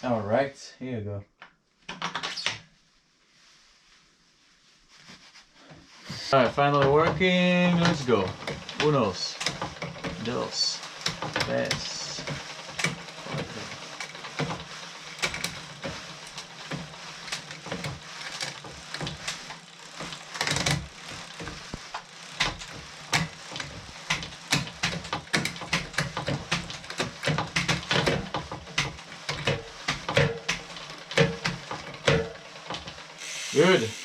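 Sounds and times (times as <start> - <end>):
tools clicking and knocking: 7.8 - 10.2, 22.4 - 32.9.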